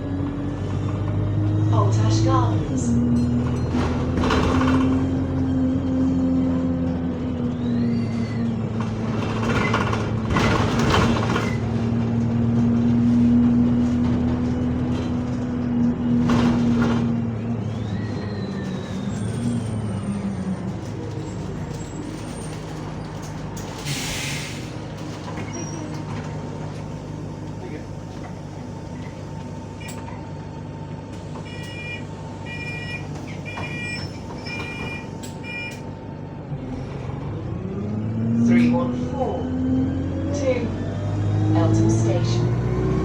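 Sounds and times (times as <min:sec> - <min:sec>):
bus engine droning: 0:00.0 - 0:43.0
air brake hiss: 0:23.9 - 0:24.7.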